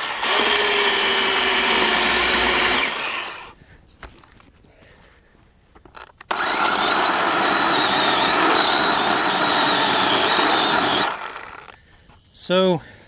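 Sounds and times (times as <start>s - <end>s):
chainsaw whining at full speed: 0.0s - 3.6s, 6.3s - 11.8s.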